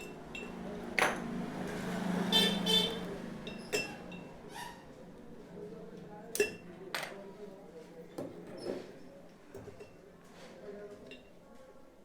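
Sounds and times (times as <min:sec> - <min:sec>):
motor vehicle passing: 0:00.1 - 0:05.2
vehicle horn tooting: 0:02.2 - 0:03.3.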